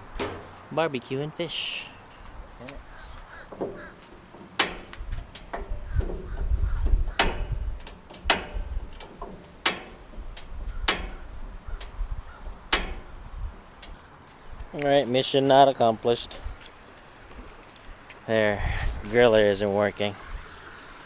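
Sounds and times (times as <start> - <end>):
gas grill igniter clicking: 4.6 - 5.7, 7.1 - 14.0.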